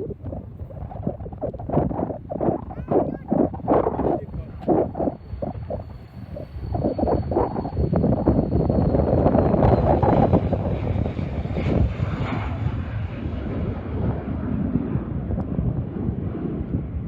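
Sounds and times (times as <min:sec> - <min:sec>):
jet airliner engine noise: 0:00.0 - 0:17.0.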